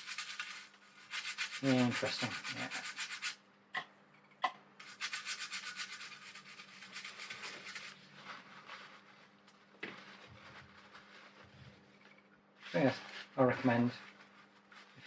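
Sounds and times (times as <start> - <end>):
brush scrubbing circuit board: 0.0 - 3.4, 4.8 - 8.0.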